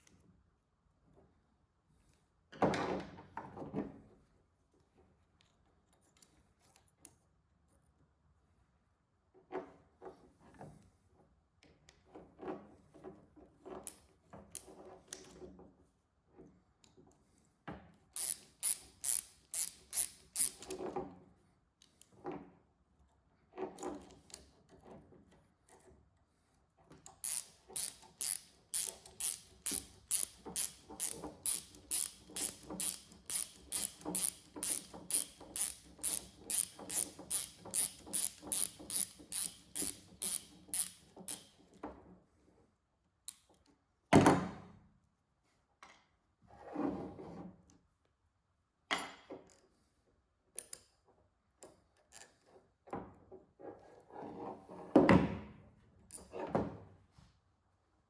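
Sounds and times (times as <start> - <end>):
ratchet wrench clicking: 18.2 - 20.8, 27.2 - 41.5.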